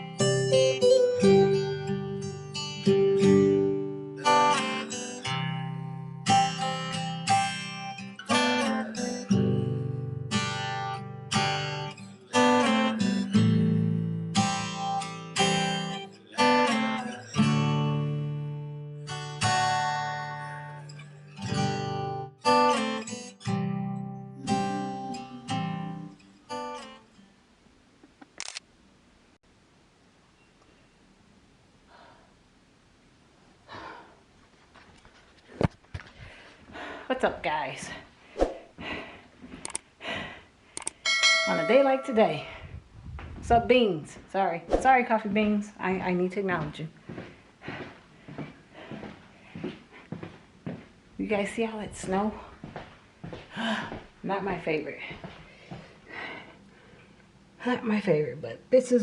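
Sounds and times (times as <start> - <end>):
acoustic guitar music: 0.0 - 27.4.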